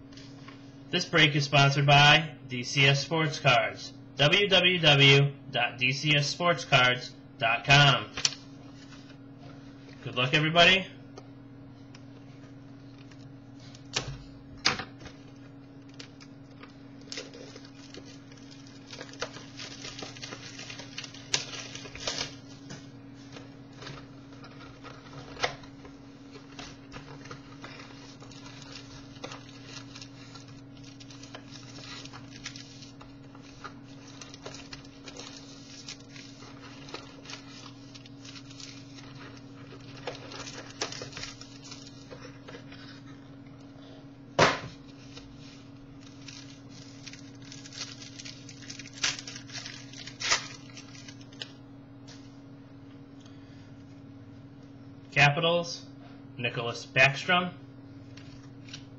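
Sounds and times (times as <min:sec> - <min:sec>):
cardboard and wrapper rustling: 0:15.2 - 0:43.0, 0:44.8 - 0:51.4.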